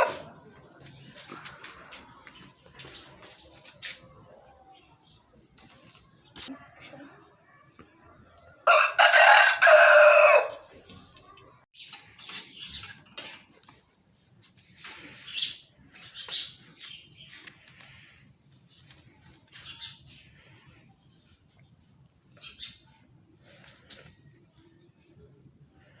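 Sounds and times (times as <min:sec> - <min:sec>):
rooster crowing: 0:00.0 - 0:00.3, 0:08.6 - 0:10.7.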